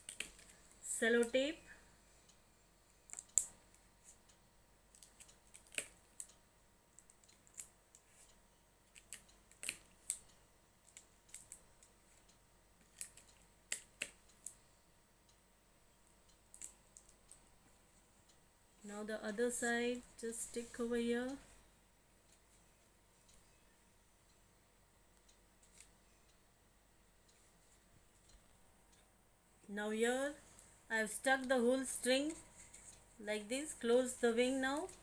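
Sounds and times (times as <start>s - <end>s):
sharp clicks of tape and paper: 3.0s - 6.4s, 7.0s - 14.6s.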